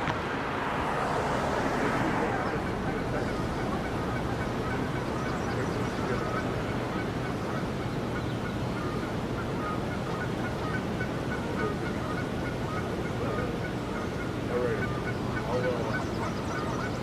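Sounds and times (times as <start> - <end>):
steady background rush: 0.0 - 17.0
geese honking: 0.6 - 17.0.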